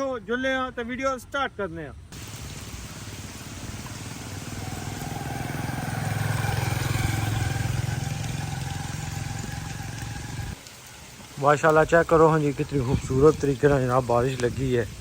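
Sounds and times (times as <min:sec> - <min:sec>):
constant hiss: 0:00.0 - 0:15.0
vehicle engine running: 0:02.8 - 0:10.6.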